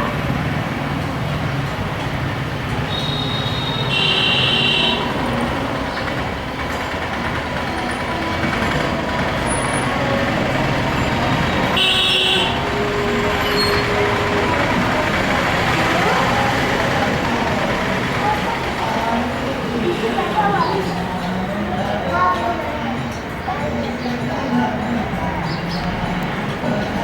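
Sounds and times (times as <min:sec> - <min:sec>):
street traffic noise: 0:00.0 - 0:27.0
vehicle horns honking: 0:02.7 - 0:05.7, 0:11.0 - 0:15.6.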